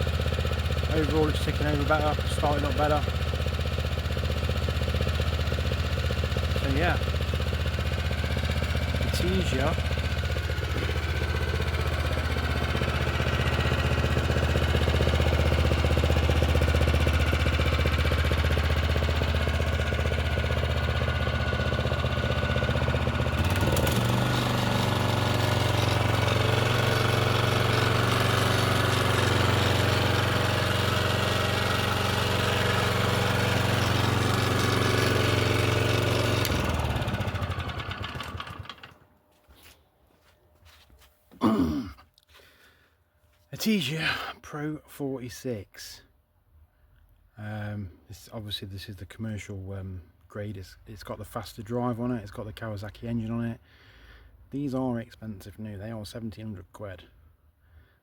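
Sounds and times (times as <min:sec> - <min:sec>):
lawn mower engine running: 0:00.0 - 0:39.1.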